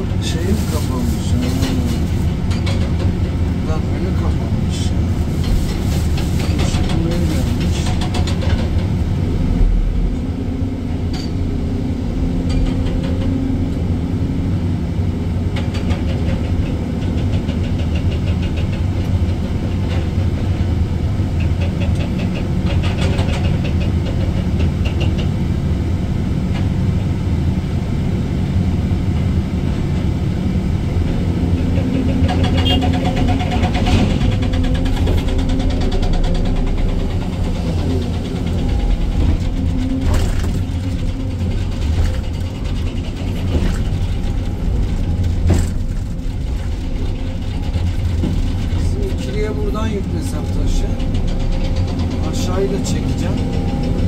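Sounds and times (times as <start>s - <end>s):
excavator engine and hydraulics: 0.0s - 54.0s
rapid clattering: 31.8s - 54.0s.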